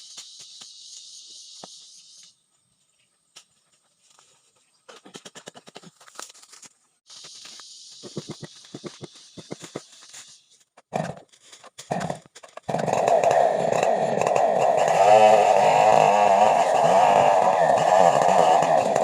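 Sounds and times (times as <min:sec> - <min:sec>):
chainsaw engine running: 0:11.9 - 0:19.0.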